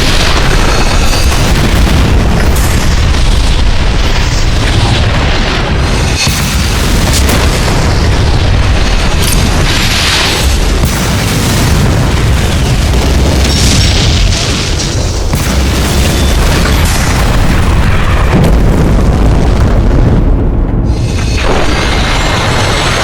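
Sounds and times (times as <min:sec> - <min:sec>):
hissing blast: 0:00.0 - 0:19.6
rumble of explosions: 0:00.0 - 0:23.0
sharp cracks: 0:00.0 - 0:23.0.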